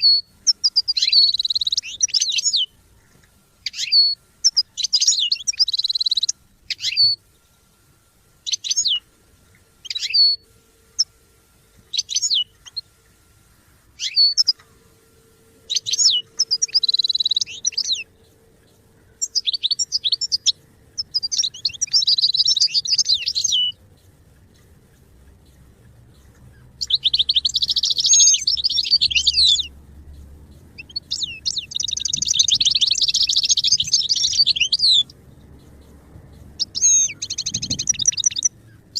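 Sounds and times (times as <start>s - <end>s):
goldfinch chirping and twittering: 0.0s - 2.7s, 3.6s - 7.2s, 8.4s - 9.0s, 9.8s - 10.4s, 11.9s - 12.9s, 14.0s - 14.6s, 15.7s - 23.8s, 26.2s - 29.7s, 30.8s - 38.9s.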